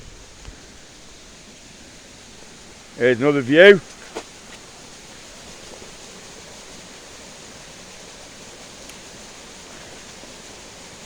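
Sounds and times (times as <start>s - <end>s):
swollen brook rushing: 0.0s - 11.0s.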